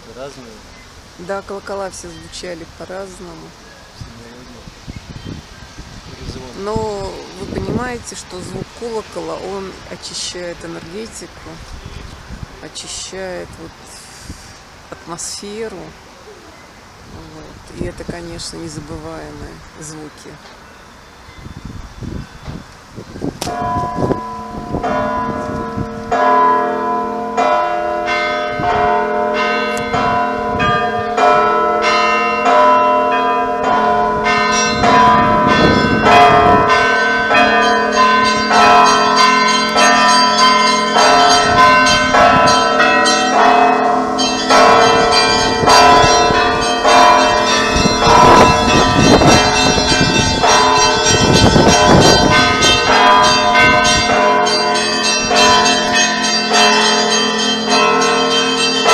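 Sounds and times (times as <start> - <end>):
church bells ringing: 0.0 - 4.4, 6.2 - 16.0, 23.4 - 58.9
low hum of large bell: 23.5 - 58.9.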